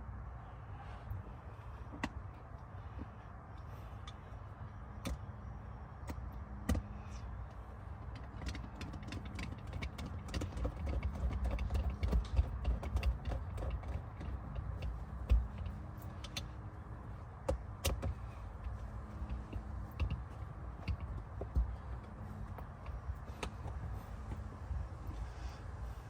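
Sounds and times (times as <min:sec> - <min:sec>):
low steady rumble: 0:00.0 - 0:26.0
small clicks and taps: 0:04.9 - 0:25.2.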